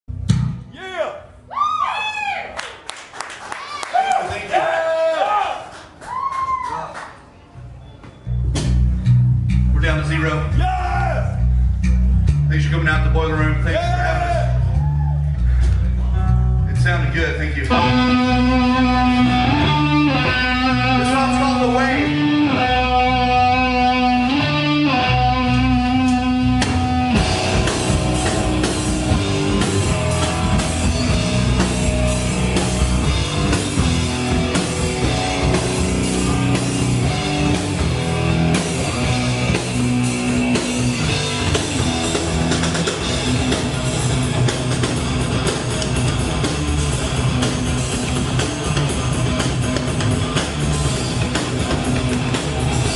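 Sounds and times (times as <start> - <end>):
metal band playing: 8.6 - 52.9
ringing guitar riff: 17.7 - 49.5.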